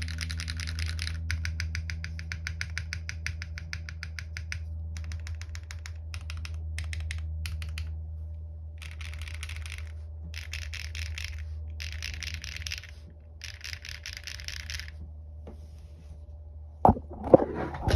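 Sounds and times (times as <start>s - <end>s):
mechanical keyboard typing: 0.0s - 7.9s, 8.8s - 14.9s.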